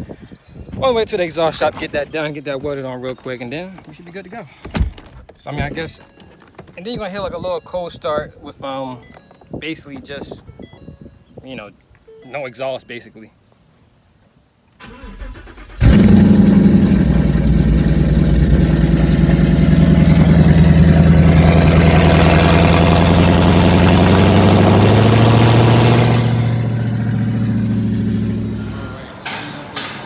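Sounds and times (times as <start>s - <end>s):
car engine cold start: 14.8s - 29.1s
loud engine fast idle: 15.0s - 28.8s.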